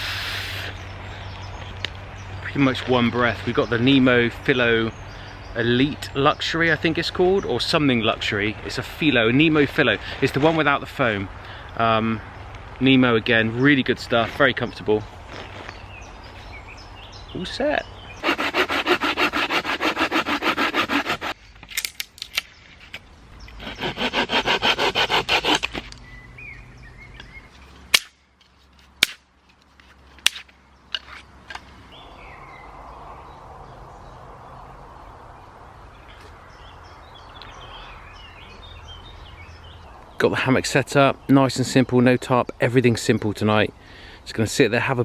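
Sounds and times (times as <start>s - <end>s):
hand saw cutting wood: 18.2s - 21.4s, 23.5s - 26.0s
sharp cracks: 20.9s - 22.6s, 27.9s - 28.3s, 29.0s - 29.3s, 30.2s - 31.7s.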